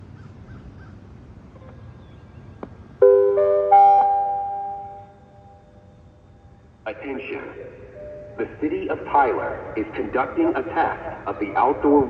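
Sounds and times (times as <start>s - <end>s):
three-note rising chime: 3.0s - 5.8s, 8.0s - 8.4s.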